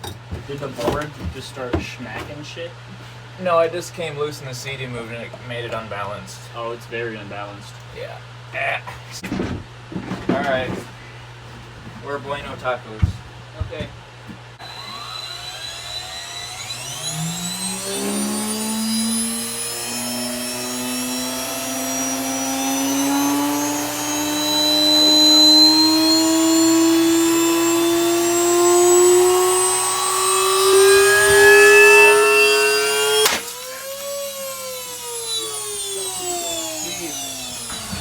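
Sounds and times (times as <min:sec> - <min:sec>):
motor whine spinning a disc: 0:14.6 - 0:38.0.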